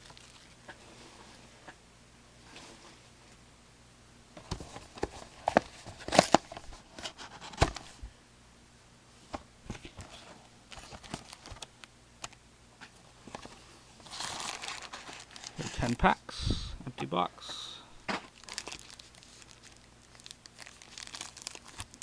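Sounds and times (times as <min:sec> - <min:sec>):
cardboard packs tapping and rustling: 0:18.1 - 0:22.0.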